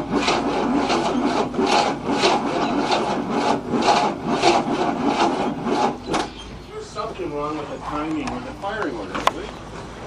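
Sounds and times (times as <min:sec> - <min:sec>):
engine cranking slowly on starter: 0:00.0 - 0:06.4.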